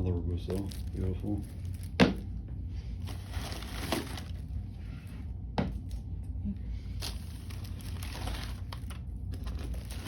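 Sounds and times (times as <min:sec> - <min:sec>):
low steady hum: 0:00.0 - 0:10.0
packaging rustling: 0:03.0 - 0:04.6, 0:07.0 - 0:10.0.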